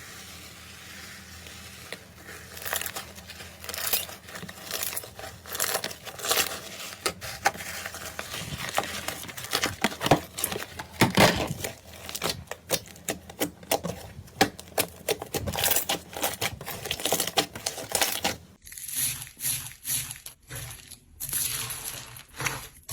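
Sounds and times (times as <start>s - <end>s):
tapping clicking and crinkling: 1.9s - 18.6s.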